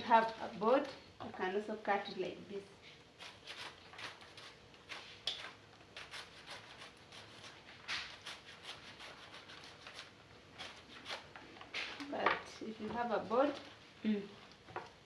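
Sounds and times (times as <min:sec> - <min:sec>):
knife slicing leaves: 0:03.2 - 0:11.3.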